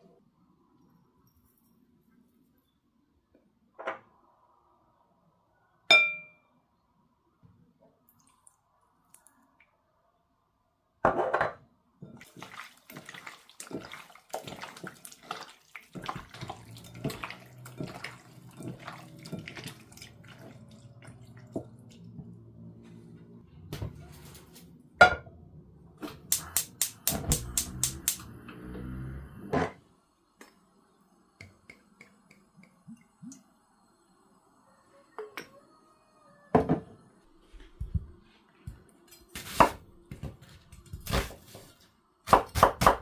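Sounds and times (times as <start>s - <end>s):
ringing clink: 5.9s - 6.4s
tap water splashing in a sink: 12.2s - 22.0s.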